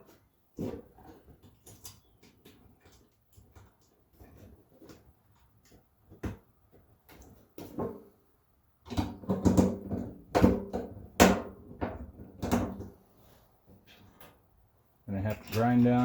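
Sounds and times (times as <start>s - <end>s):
metal tools clanking: 15.2s - 16.0s.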